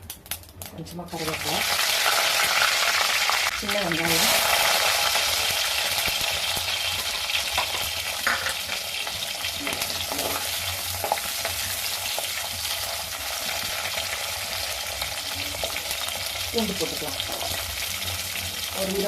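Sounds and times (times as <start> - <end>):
onions sizzling in oil: 0.4 - 19.0
spoon stirring in a pan: 7.0 - 14.1.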